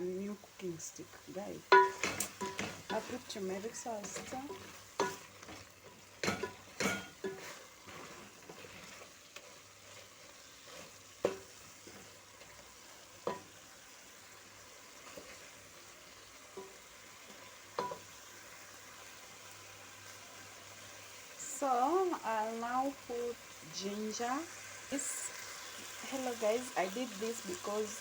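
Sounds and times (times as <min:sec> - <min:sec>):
faint sizzle from pot: 0:00.0 - 0:28.0
stick knocking against metal pot: 0:01.7 - 0:03.2, 0:11.2 - 0:11.6, 0:17.8 - 0:18.0.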